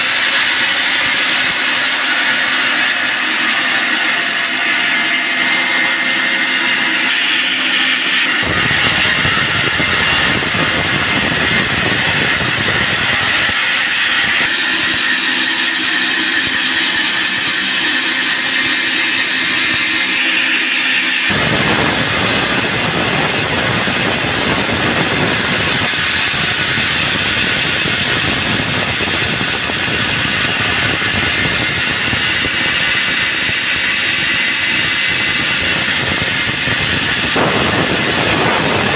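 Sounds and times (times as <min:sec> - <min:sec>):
band sawmill running: 0:00.0 - 0:38.9
deep rumble: 0:21.3 - 0:31.7.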